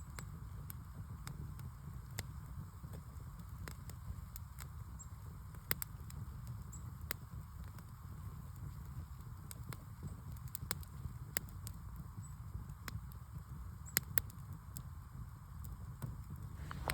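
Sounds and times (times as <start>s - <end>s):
fire crackling: 0.0s - 16.9s
steady low rumble: 16.6s - 16.9s.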